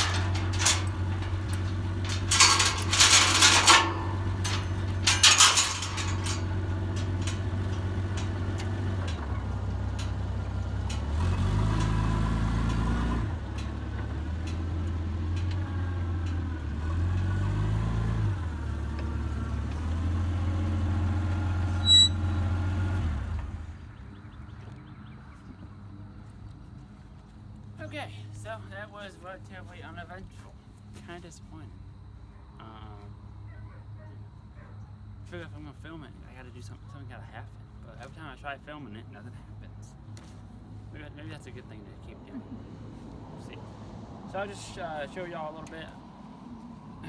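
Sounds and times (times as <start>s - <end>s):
loud sharp rattling: 0.0s - 10.2s
engine running: 0.0s - 24.0s.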